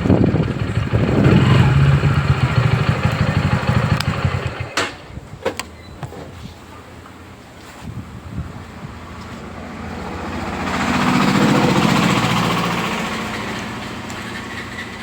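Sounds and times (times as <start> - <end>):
vehicle engine passing by: 0.0 - 4.8, 9.2 - 15.0.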